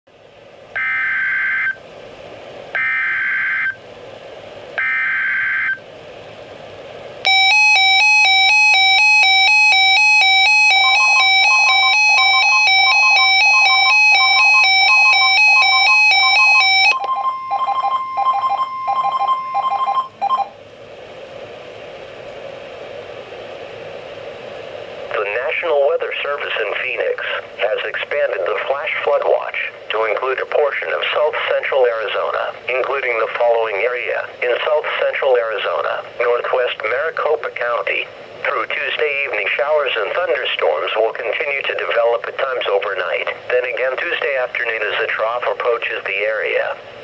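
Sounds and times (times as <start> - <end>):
warbling electronic alarm: 0.8 - 1.8, 2.8 - 3.8, 4.8 - 5.8, 7.3 - 20.6
steady alert tone: 2.8 - 3.8, 4.8 - 5.8, 7.3 - 20.5
radio hiss: 23.1 - 47.0.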